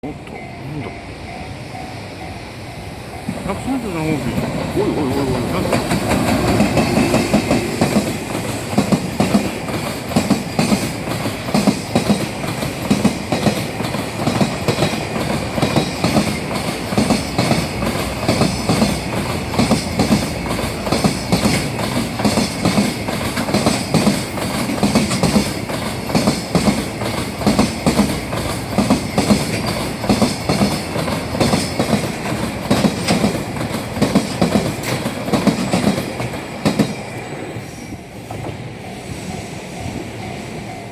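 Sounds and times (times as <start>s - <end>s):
train wheels clattering over rail joints: 5.3s - 37.3s.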